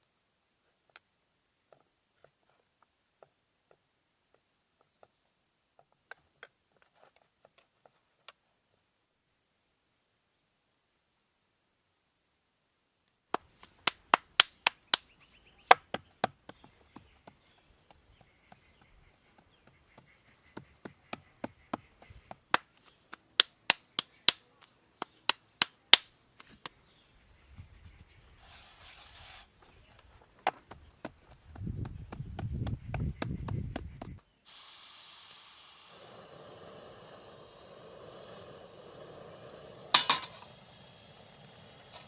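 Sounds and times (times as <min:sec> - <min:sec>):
brief hiss: 0:34.5 - 0:42.0.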